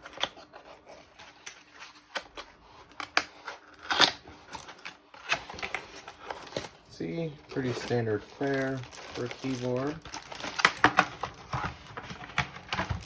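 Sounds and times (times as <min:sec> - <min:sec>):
cardboard and tape scraping: 0:07.6 - 0:13.0.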